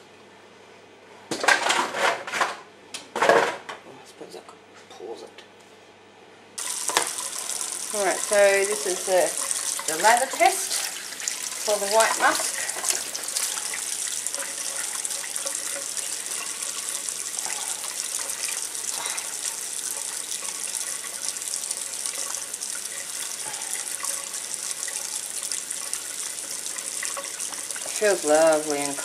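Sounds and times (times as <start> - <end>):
tap water running over hands: 6.6 - 29.0.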